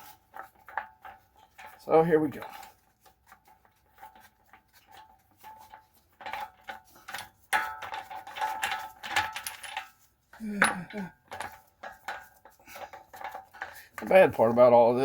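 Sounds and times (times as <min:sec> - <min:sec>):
metal clinking: 0:05.4 - 0:14.1.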